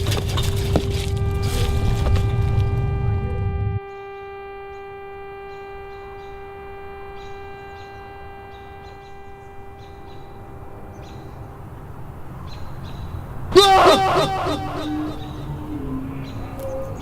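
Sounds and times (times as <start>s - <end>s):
held droning tone: 0.0s - 17.0s
loud low rumble: 0.4s - 3.8s.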